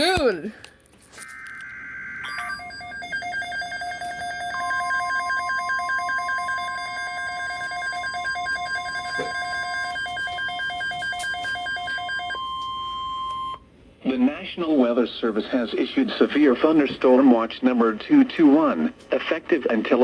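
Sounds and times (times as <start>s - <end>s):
steady alert tone: 1.3s - 12.4s
fast pulsing beep alert: 2.2s - 13.6s.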